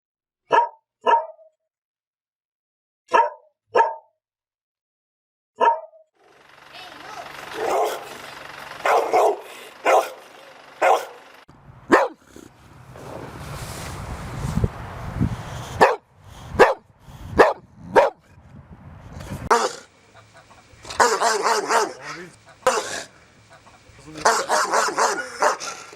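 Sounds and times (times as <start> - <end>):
dogs barking: 0.5 - 1.5, 3.1 - 4.0, 5.6 - 5.9, 6.6 - 12.4, 15.8 - 16.8, 17.4 - 18.2, 19.5 - 25.9
low rumbling noise: 6.3 - 25.9.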